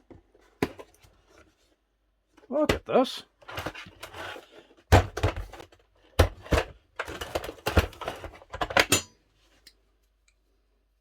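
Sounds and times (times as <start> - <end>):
tools clattering and clicking: 6.4 - 9.8.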